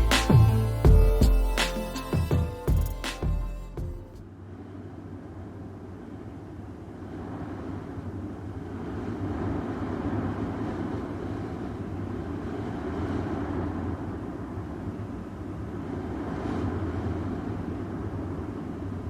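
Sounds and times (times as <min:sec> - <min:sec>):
low mechanical rumble: 0:00.0 - 0:04.2
hum: 0:00.0 - 0:04.3.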